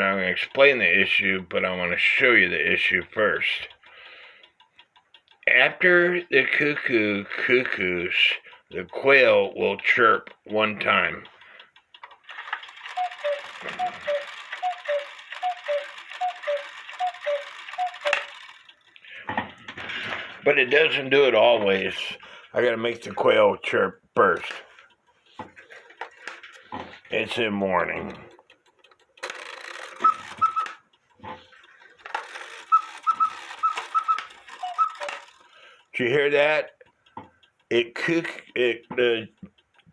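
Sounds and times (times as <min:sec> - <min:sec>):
clock movement clicks: 0:00.0 - 0:39.9
cuckoo clock two-note call: 0:12.8 - 0:18.5, 0:29.7 - 0:30.8, 0:32.4 - 0:35.4
clicking levers: 0:28.4 - 0:35.5.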